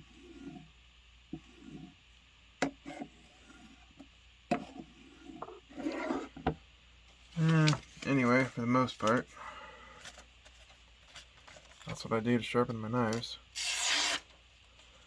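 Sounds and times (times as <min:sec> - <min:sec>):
knife scraping on sharpener: 0:13.6 - 0:14.2.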